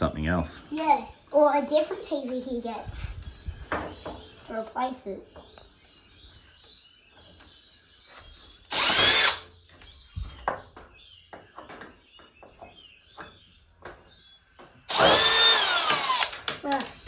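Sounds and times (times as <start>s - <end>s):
cordless screwdriver whirring: 8.7s - 9.5s, 14.9s - 16.6s.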